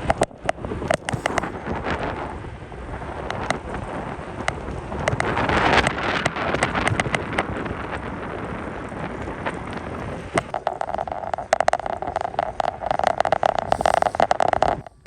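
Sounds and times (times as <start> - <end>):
bicycle tyre noise: 0.0 - 15.0
wind rushing over microphone: 0.0 - 15.0
clicks and rattles: 8.9 - 15.0
steady mid-pitched tone: 10.5 - 15.0.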